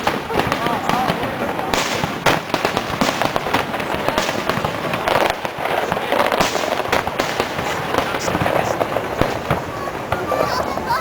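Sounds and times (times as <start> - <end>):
fireworks bangs and crackles: 0.0 - 11.0.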